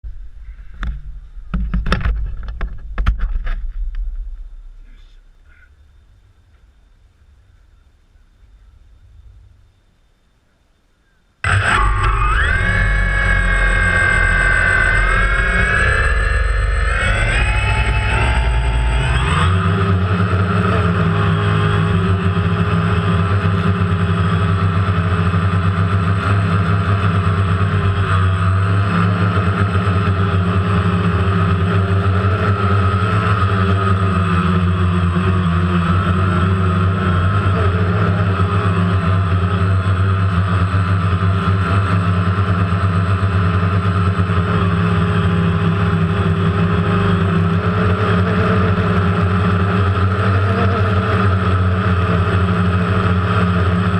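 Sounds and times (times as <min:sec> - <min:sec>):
drone propellers buzzing: 0:11.4 - 0:53.9.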